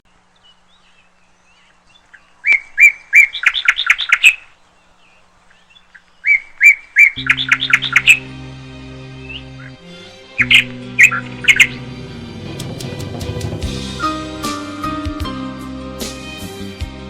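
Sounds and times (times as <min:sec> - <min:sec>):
songbird singing: 0:00.0 - 0:15.6
music with low notes: 0:07.2 - 0:17.0.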